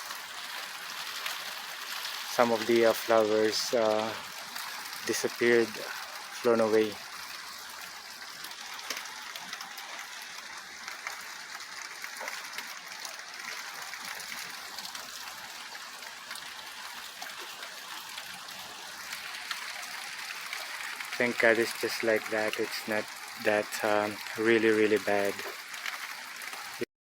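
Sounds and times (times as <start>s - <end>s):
light rain falling: 0.0s - 26.9s
water running: 1.8s - 7.3s, 18.4s - 26.9s.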